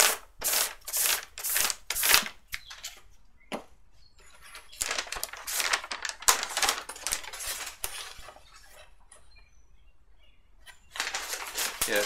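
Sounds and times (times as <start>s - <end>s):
paper rustling: 4.2s - 9.0s, 10.8s - 12.0s.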